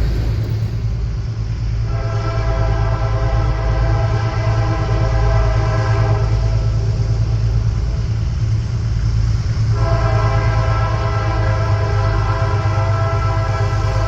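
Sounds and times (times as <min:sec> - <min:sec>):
diesel engine rumble: 0:00.0 - 0:03.6, 0:06.2 - 0:14.0
locomotive air horn blasts: 0:01.8 - 0:06.7, 0:09.7 - 0:14.0.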